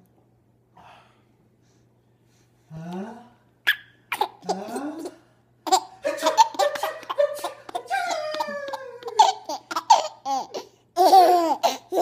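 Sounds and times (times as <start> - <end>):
baby laughing: 3.7 - 12.0.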